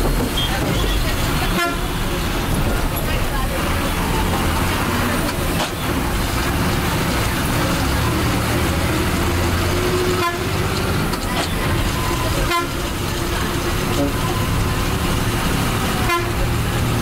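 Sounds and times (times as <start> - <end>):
bus body rattles: 0.0 - 17.0
bus engine drone: 0.0 - 17.0
bus horn: 0.3 - 2.4, 9.2 - 17.0.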